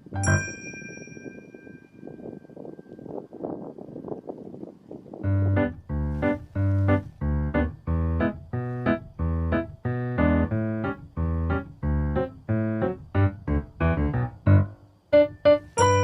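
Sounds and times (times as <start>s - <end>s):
keyboard chords over bass notes: 0.0s - 0.4s, 5.2s - 16.0s.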